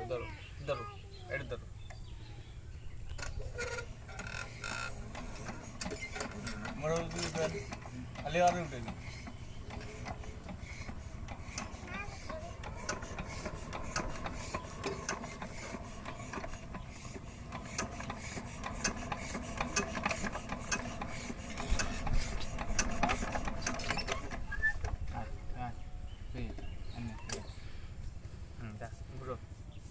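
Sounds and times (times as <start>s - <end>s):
small motor humming: 0.0s - 29.9s
clattering clicks of moving parts: 3.1s - 25.0s.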